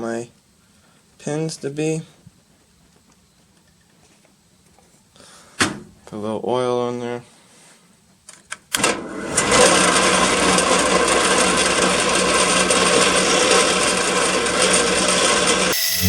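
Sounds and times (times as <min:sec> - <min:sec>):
electric drill boring through steel: 0:14.5 - 0:16.0.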